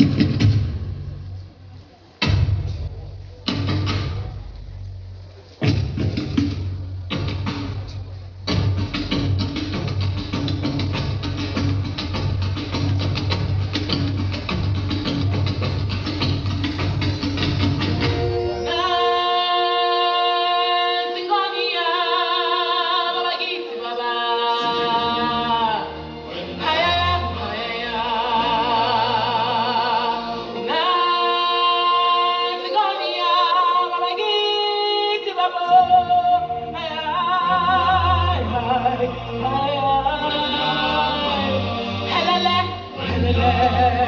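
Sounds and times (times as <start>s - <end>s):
deep drum beats: 0.0s - 1.3s, 5.6s - 18.4s.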